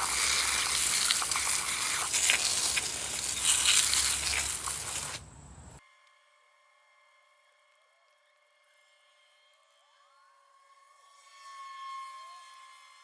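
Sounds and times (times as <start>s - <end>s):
scrubbing engine block: 0.0s - 5.8s.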